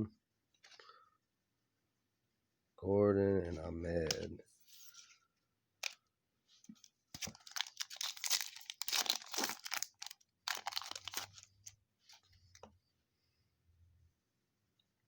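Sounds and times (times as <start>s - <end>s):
foil wrapper tearing and crinkling: 7.2s - 11.5s.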